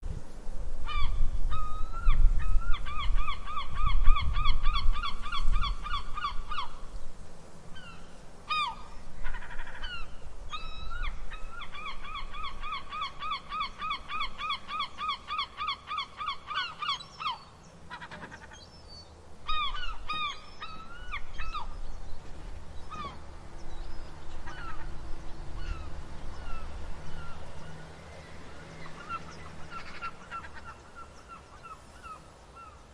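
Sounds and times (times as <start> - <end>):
gull yelping calls: 0.9 - 6.8, 7.8 - 18.6, 19.4 - 21.8, 22.9 - 23.2, 24.4 - 24.9, 28.9 - 32.8
seagulls laughing calls: 0.9 - 6.8, 7.8 - 18.8, 19.4 - 21.8, 22.8 - 23.3, 24.0 - 27.8, 28.6 - 32.9.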